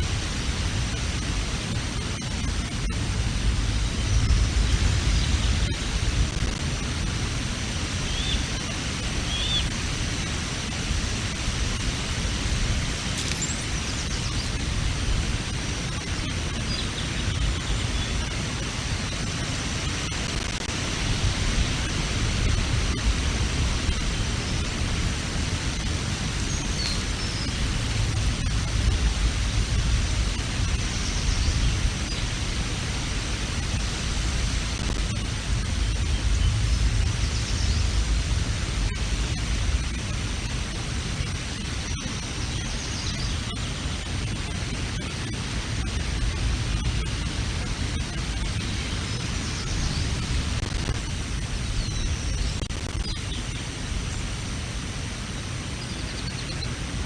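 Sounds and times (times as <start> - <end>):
strong wind on microphone: 0.0 - 18.2, 20.2 - 41.7.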